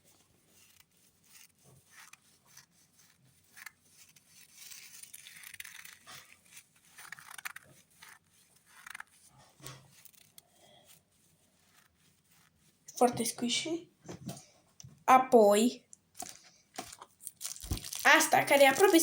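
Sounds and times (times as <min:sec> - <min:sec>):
rice grains rustling and crackling: 0:16.2 - 0:19.0.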